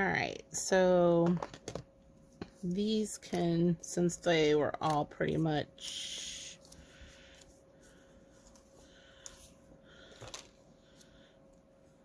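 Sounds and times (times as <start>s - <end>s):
faint steady hum: 0.0s - 12.0s
paper tags rustling: 2.4s - 11.2s.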